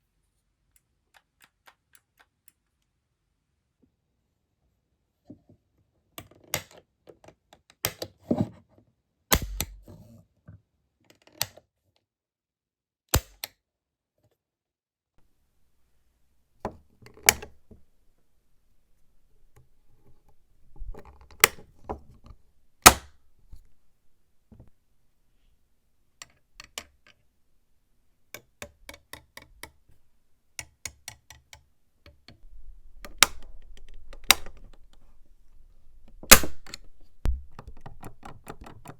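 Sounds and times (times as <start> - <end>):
pistol mechanism clicking: 9.3 - 9.8, 13.2 - 13.5, 33.0 - 34.9, 36.3 - 37.0.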